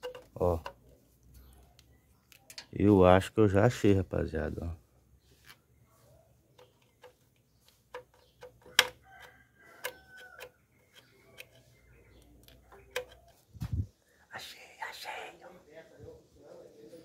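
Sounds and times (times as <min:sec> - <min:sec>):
metallic clicks of hand tools: 0:06.6 - 0:09.0, 0:12.4 - 0:13.4.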